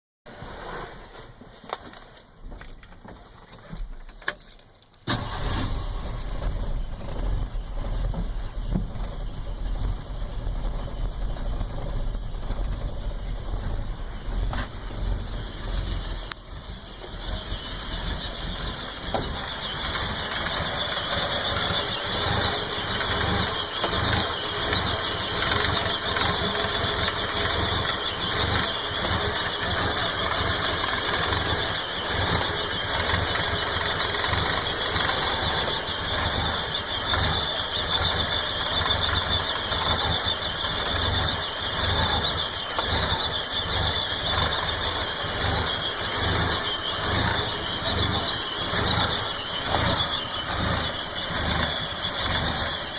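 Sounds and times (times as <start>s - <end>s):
engine starting: 5.0s - 8.1s
engine rough idle: 5.1s - 52.9s.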